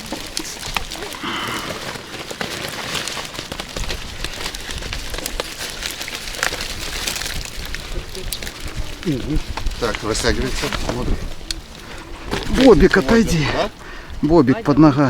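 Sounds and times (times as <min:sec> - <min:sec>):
small crackles and clicks: 0:00.0 - 0:14.1
wind buffeting microphone: 0:03.6 - 0:14.9.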